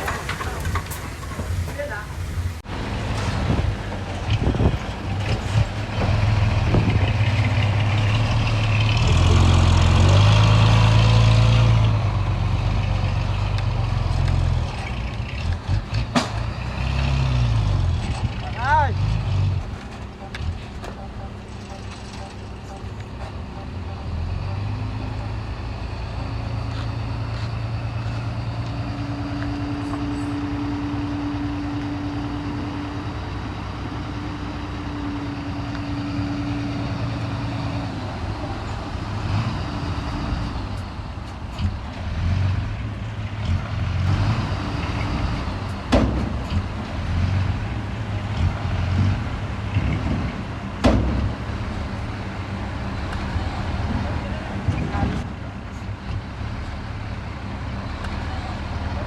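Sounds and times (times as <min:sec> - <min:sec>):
heavy diesel engine running: 0:00.0 - 0:59.0
sharp metallic knocks: 0:45.9 - 0:46.8, 0:49.7 - 0:51.6.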